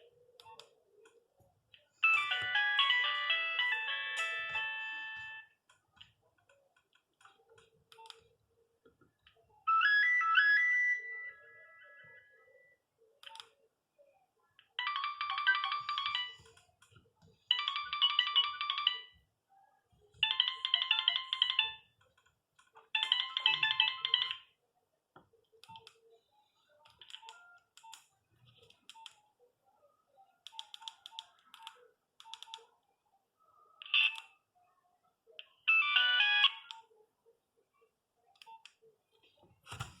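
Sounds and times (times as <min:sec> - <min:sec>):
mobile phone ringtone: 0:02.0 - 0:05.6, 0:09.7 - 0:12.8, 0:14.8 - 0:16.5, 0:17.5 - 0:19.2, 0:20.2 - 0:21.9, 0:23.0 - 0:24.5, 0:35.7 - 0:36.7.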